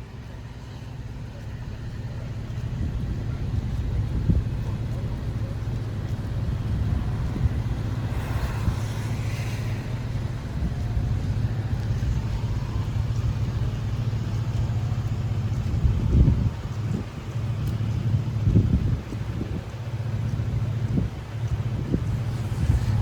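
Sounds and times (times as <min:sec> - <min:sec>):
car engine low rumble: 0:00.0 - 0:23.0
wind noise: 0:00.0 - 0:23.0
hiss: 0:07.9 - 0:10.4.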